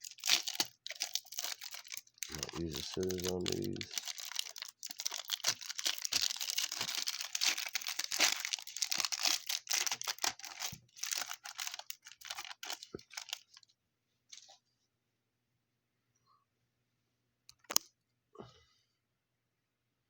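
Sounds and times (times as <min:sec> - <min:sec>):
wrapper crinkling and tearing: 0:00.0 - 0:13.7.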